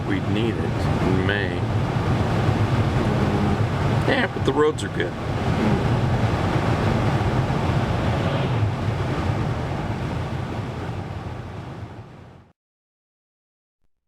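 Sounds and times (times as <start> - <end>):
low engine rumble: 0.0 - 11.7
road and tyre noise: 5.0 - 11.6.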